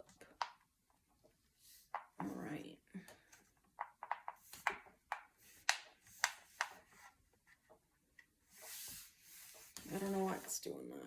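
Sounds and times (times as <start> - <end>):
sharp clicks and taps: 3.6 - 6.8.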